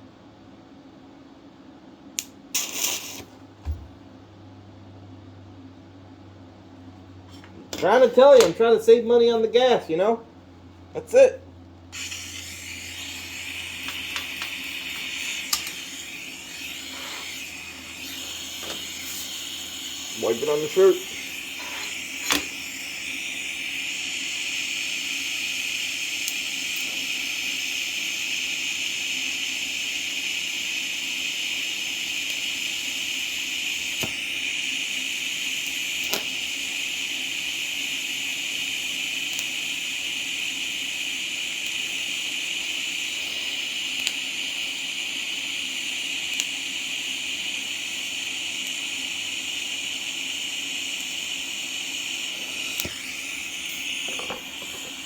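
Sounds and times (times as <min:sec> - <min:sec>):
faint hum: 0:00.0 - 0:55.0
welding arc hiss: 0:02.2 - 0:03.4, 0:11.0 - 0:55.0.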